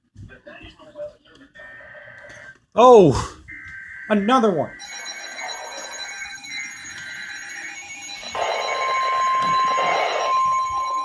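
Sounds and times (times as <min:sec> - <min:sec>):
steady warning tone: 0:03.5 - 0:11.0.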